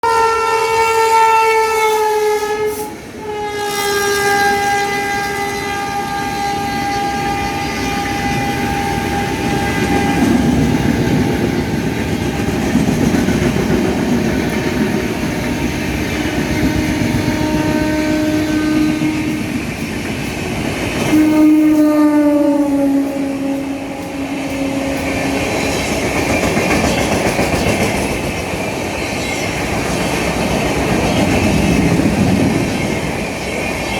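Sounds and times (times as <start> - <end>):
locomotive horn blasts: 0.0 - 10.6, 15.0 - 19.6, 21.0 - 25.9
train rumbling on tracks: 0.0 - 33.9.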